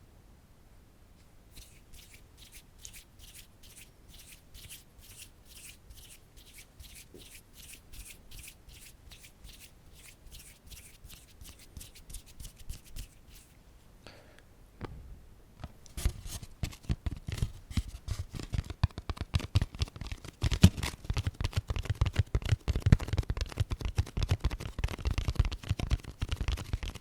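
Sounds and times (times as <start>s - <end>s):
short scratchy strokes: 1.5s - 13.6s.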